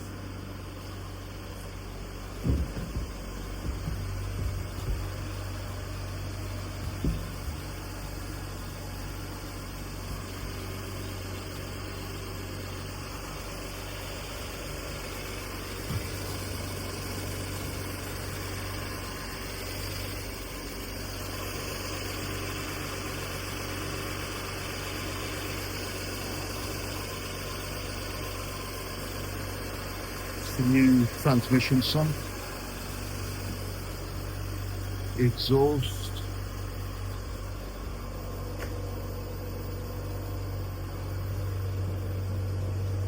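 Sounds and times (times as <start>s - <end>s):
car engine idling: 0.0s - 43.0s
sharp knocks: 2.3s - 5.9s, 6.7s - 7.8s.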